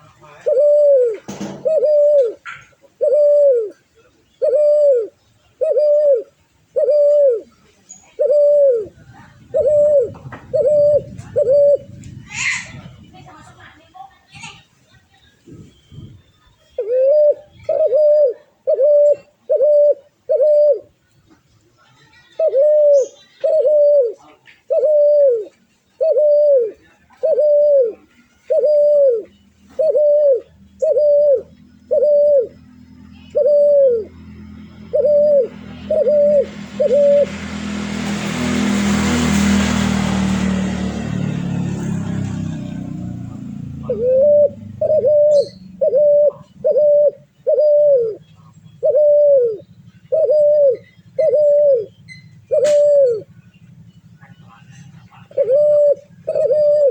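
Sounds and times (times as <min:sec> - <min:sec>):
dove cooing: 0:00.0 - 0:13.4, 0:15.4 - 0:21.2, 0:21.9 - 0:56.9
loud rushing noise with low hum: 0:08.8 - 0:13.6, 0:33.8 - 0:44.8.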